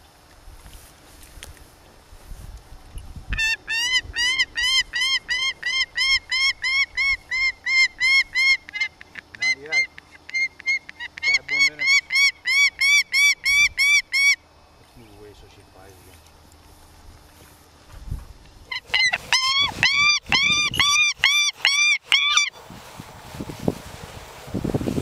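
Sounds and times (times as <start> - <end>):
falcon lower rising calls: 3.3 - 14.4, 18.7 - 22.6
falcon ringing kek calls: 3.4 - 14.4, 18.7 - 22.6.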